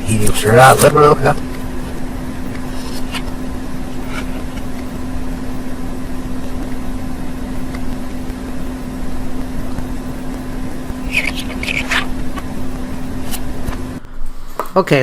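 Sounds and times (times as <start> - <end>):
machine hum: 0.0 - 15.0
bird chirp: 11.0 - 12.0.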